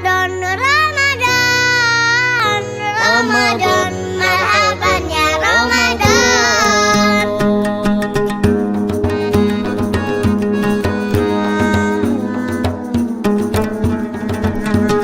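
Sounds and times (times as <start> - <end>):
song with high singing voice: 0.0 - 8.6.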